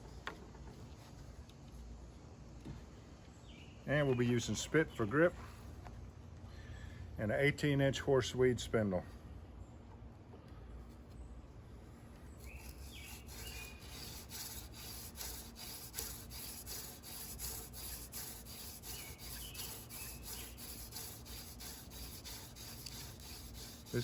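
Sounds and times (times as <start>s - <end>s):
birds chirping: 12.1s - 14.1s, 18.5s - 20.8s
wooden spindle rubbing: 12.4s - 24.0s.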